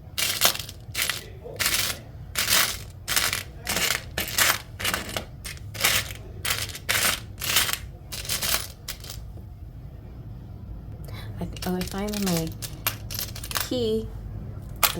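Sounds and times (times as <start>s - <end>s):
metal charms clinking: 0.2s - 9.2s, 11.5s - 13.8s.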